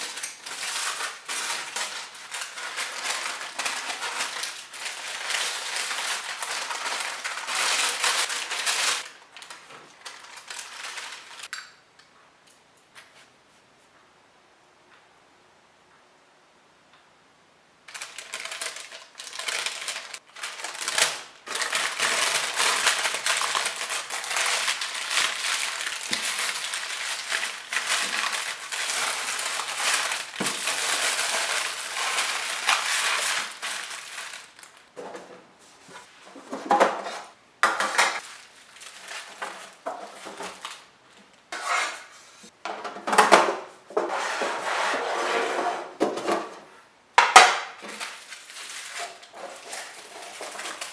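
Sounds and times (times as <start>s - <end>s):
utensil scraping in mixing bowl: 41.6s - 42.5s.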